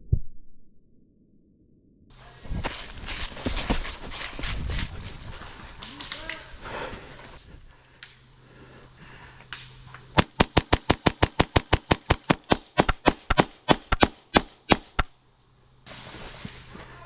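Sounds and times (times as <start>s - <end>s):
airsoft pistol shots: 10.2s - 15.1s.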